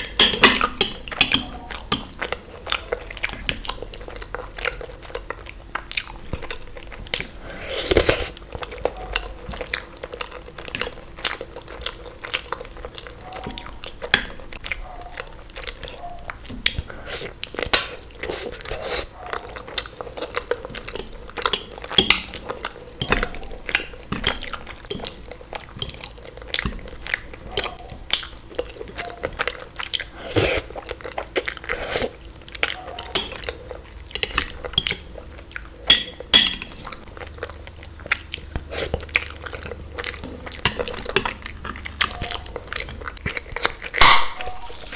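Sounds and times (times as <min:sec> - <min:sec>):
cutlery clinking against dishes: 0:00.0 - 0:02.2, 0:23.0 - 0:26.9, 0:33.1 - 0:33.4, 0:35.9 - 0:36.7, 0:44.0 - 0:44.9
person chewing and crunching: 0:00.0 - 0:44.9.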